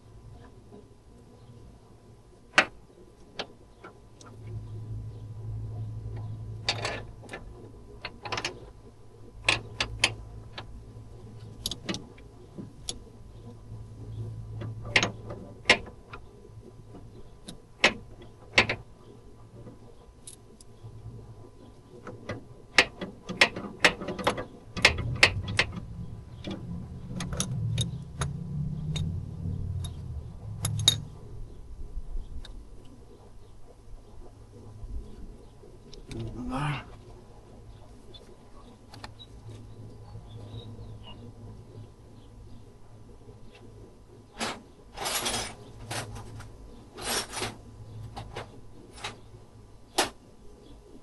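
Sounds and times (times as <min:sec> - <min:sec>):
steady low hum: 0:00.0 - 0:51.0
low rumble: 0:25.0 - 0:32.8.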